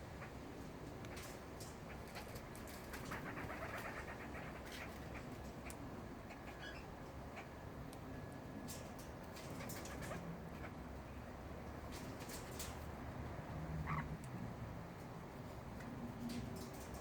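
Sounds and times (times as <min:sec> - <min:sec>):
parrot soft chattering: 0:02.9 - 0:07.6, 0:13.8 - 0:14.2.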